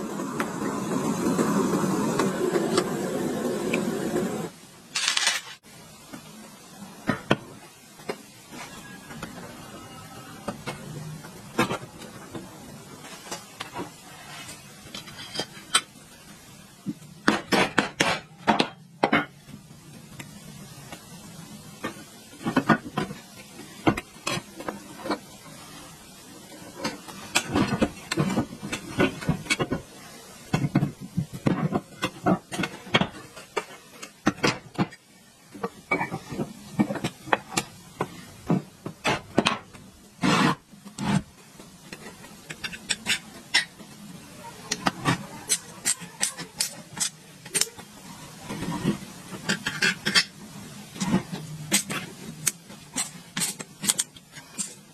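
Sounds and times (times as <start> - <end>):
metal parts and tools clinking: 5.0 - 5.6.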